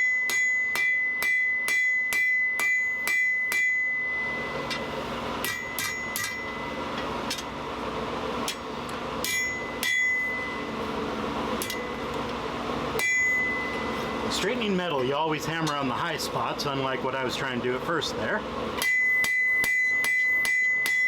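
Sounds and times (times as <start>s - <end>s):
hammer striking steel on anvil: 0.0s - 7.6s, 8.4s - 10.7s, 11.6s - 12.2s, 13.0s - 14.3s, 18.8s - 21.0s
high metallic ring: 0.0s - 7.6s, 9.2s - 10.8s, 11.6s - 12.2s, 13.0s - 14.4s, 18.8s - 21.0s
low hum: 0.0s - 16.3s.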